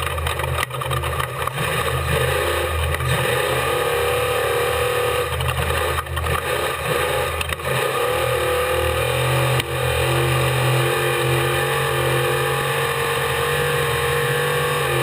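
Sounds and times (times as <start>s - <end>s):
sharp knocks and rattles: 0.0s - 2.0s
race vehicle engine running: 0.0s - 15.0s.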